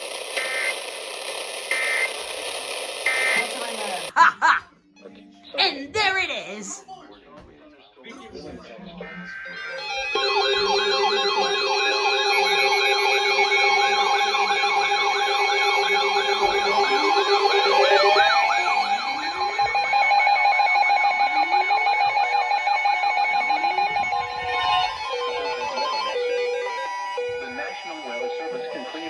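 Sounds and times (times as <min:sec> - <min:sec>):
steady alarm tones: 0:00.0 - 0:04.2, 0:10.1 - 0:28.6
electronic sirens yelping: 0:00.2 - 0:04.2, 0:10.2 - 0:25.6.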